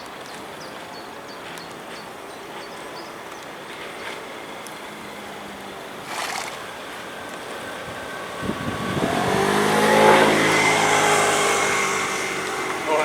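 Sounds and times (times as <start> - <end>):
vehicle engine revving: 5.3 - 13.0.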